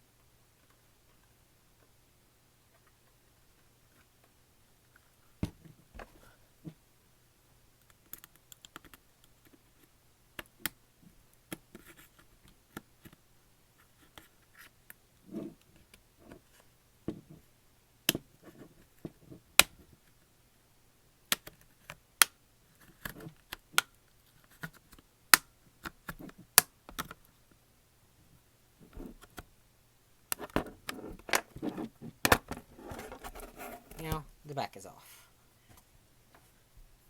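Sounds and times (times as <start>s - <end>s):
light scratching: 30.4s - 34.3s.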